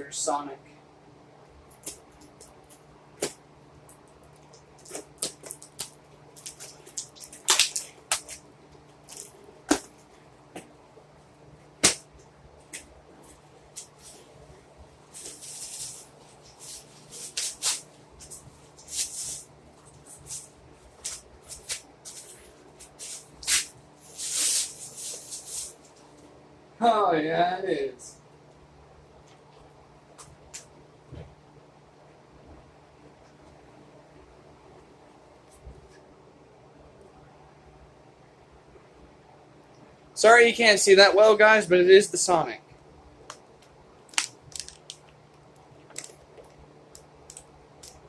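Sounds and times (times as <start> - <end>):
plastic packaging clicks and cracks: 3.9 - 8.4, 43.3 - 48.0
packaging rustling and tearing: 4.3 - 8.4, 44.1 - 48.0.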